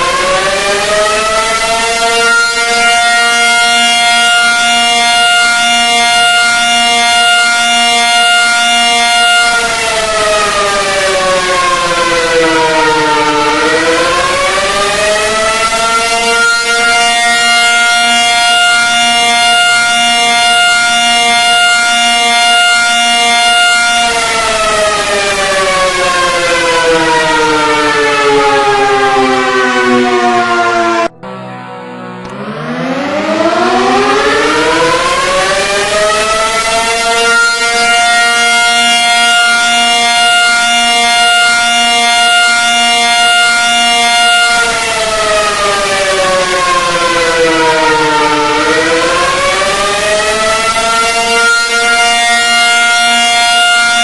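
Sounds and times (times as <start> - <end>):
siren steady wail: 0.0 - 54.0.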